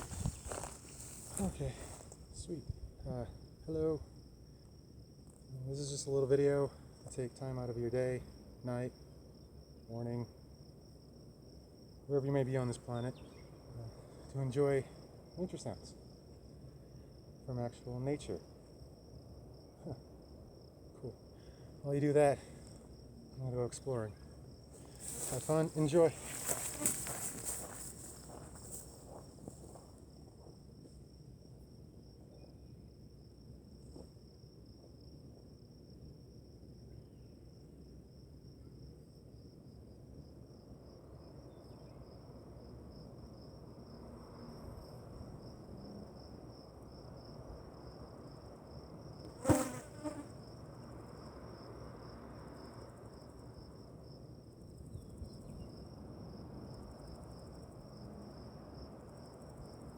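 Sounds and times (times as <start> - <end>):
insects trilling: 0.0 - 59.9.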